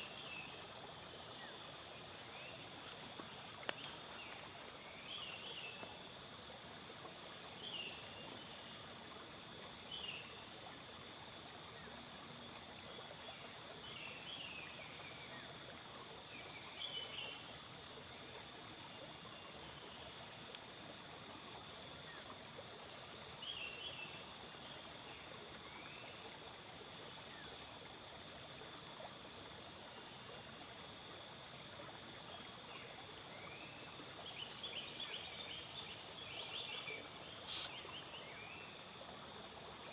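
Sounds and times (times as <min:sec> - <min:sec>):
insects trilling: 0:00.0 - 0:39.9
rapid pulsed insect chirps: 0:27.3 - 0:39.9.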